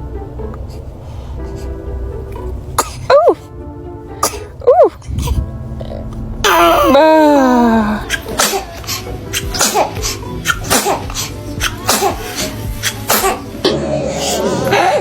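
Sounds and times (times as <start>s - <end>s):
baby sneezing: 2.8s - 3.5s, 4.2s - 5.4s, 7.8s - 13.5s.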